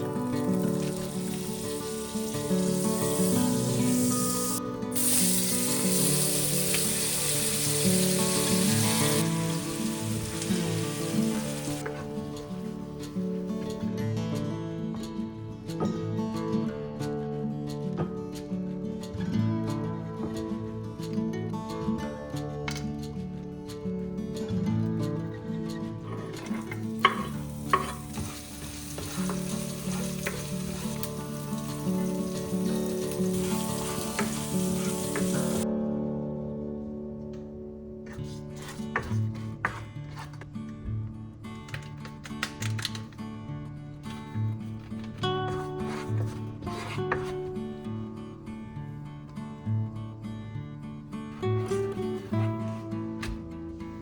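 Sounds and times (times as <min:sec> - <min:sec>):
food sizzling in a pan: 0:00.0 - 0:13.3, 0:26.4 - 0:35.6
background music: 0:00.0 - 0:40.3.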